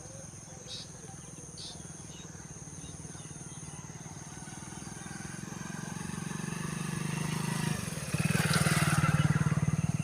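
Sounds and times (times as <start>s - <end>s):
vehicle engine running: 3.8s - 10.0s.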